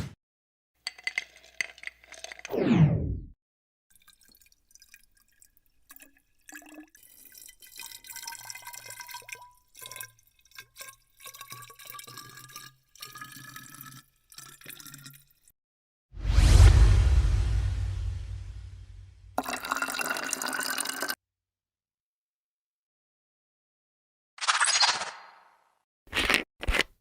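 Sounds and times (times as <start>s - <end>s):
hot water pouring: 3.9s - 15.5s, 19.4s - 21.2s.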